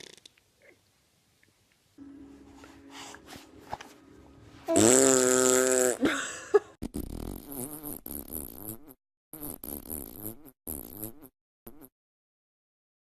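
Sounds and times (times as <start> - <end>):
wavering pitched sounds: 2.0 - 6.1
baby farting: 4.7 - 6.0, 6.8 - 11.9.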